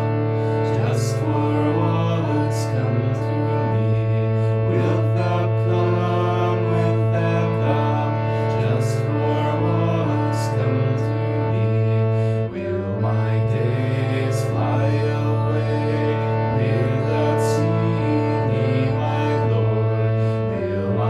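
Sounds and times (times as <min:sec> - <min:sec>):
drone instrument playing chords: 0:00.0 - 0:21.0.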